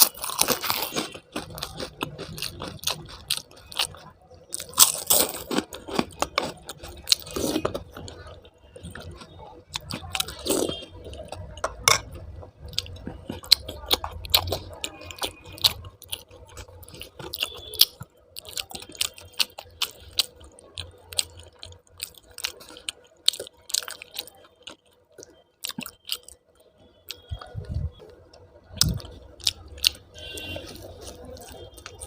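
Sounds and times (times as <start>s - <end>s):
chewing food with mouth clicks: 0.0s - 32.0s.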